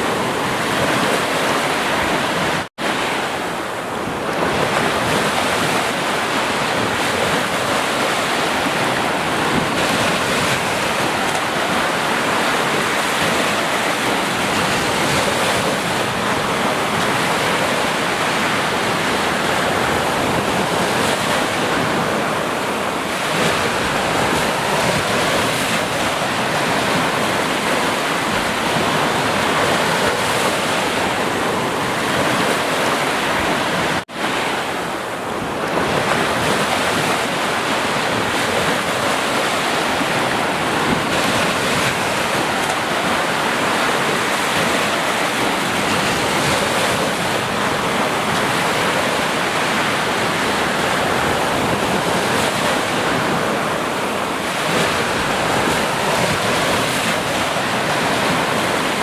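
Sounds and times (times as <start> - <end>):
ocean waves breaking: 0.0 - 59.0.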